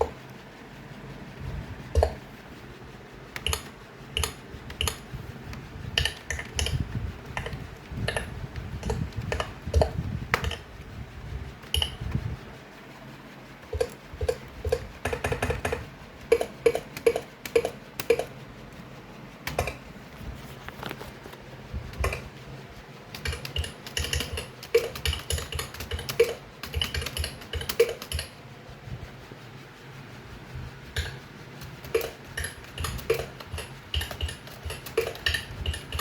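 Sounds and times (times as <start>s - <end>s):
keyboard key clicks: 3.4s - 5.0s, 6.0s - 10.6s.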